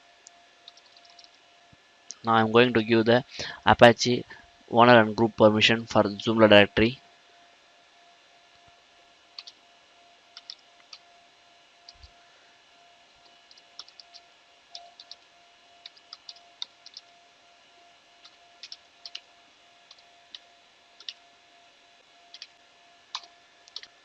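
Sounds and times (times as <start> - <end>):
low background hum: 0.0 - 24.0
keyboard keystrokes: 9.4 - 9.6, 10.4 - 11.0, 13.5 - 14.2, 14.8 - 15.2, 18.2 - 19.2, 21.0 - 21.2.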